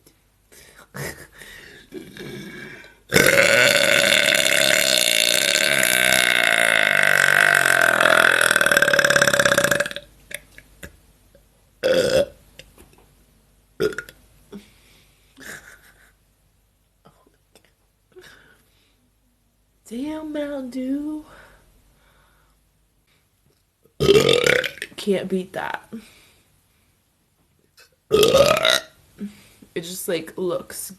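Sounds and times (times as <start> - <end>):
woman belching: 1.8 - 10.6, 11.8 - 12.4, 13.8 - 14.2, 24.0 - 24.9, 28.1 - 28.9.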